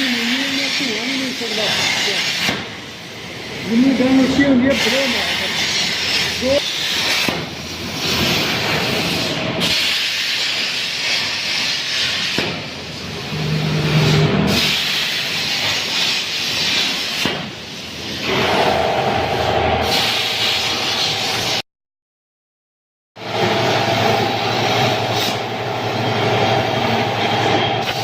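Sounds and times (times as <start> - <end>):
plasma cutting torch hissing: 0.0 - 21.6, 23.3 - 28.0.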